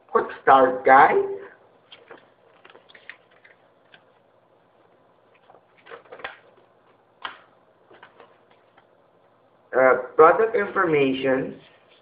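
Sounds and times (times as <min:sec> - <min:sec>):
paper and cardboard rustling: 0:05.3 - 0:06.7.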